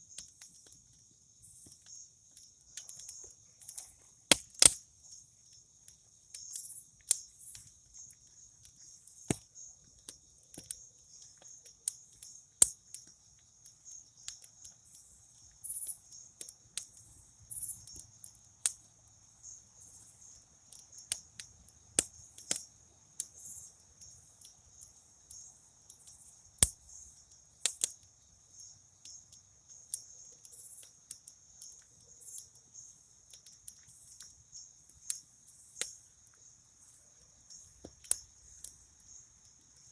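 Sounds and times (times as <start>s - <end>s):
campfire crackling and popping: 0.0s - 39.9s
crickets chirring: 0.0s - 39.9s.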